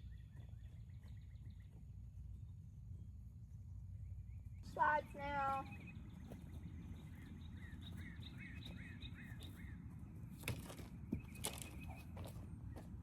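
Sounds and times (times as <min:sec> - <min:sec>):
low outdoor rumble: 0:00.0 - 0:13.0
bird chirping: 0:04.0 - 0:09.9, 0:11.0 - 0:12.9.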